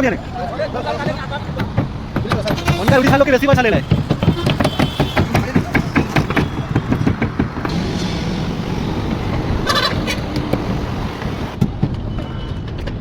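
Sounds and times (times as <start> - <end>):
rapid knocks: 1.5 - 7.7
steady rumble: 7.5 - 11.6.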